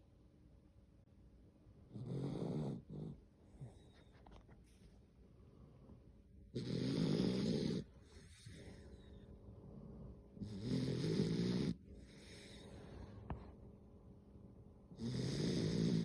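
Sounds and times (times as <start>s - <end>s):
loud snoring: 1.9s - 3.2s, 6.5s - 7.9s, 10.4s - 11.8s, 15.0s - 16.0s
quiet breathing: 2.4s - 6.4s, 7.4s - 13.9s.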